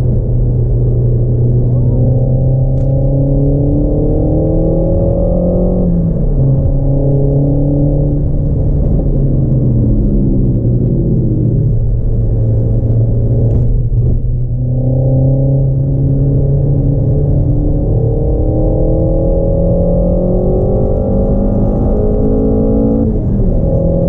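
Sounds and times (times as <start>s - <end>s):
car engine revving: 0.0s - 24.0s.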